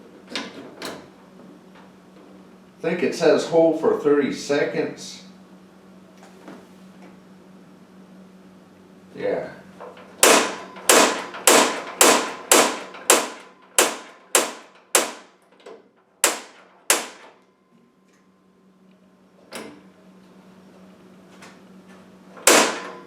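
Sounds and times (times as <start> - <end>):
heater igniter snapping: 9.8 - 17.4, 22.4 - 23.0.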